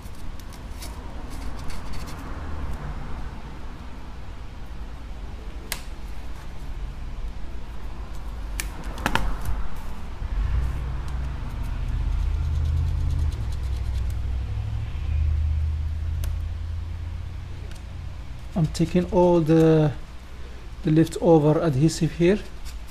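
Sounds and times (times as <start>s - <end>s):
low rumble: 9.6s - 18.4s.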